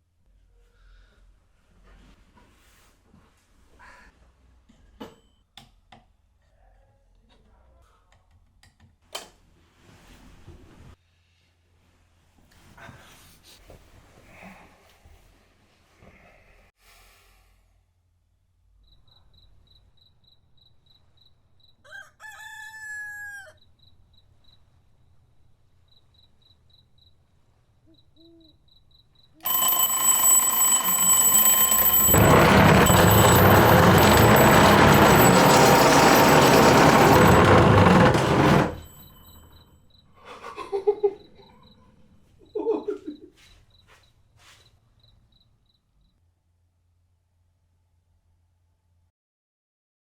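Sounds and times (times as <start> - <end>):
alarm of high tones: 29.4 - 39.2.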